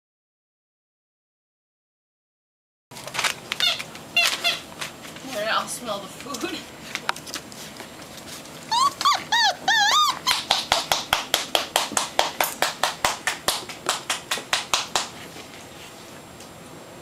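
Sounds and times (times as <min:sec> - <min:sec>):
puppy whining: 0:03.6 - 0:04.7, 0:08.3 - 0:10.9
puppy yipping: 0:03.6 - 0:04.7, 0:08.7 - 0:10.9.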